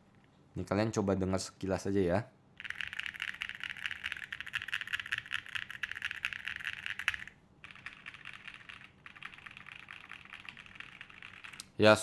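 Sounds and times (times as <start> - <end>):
mechanical keyboard typing: 2.6 - 11.6.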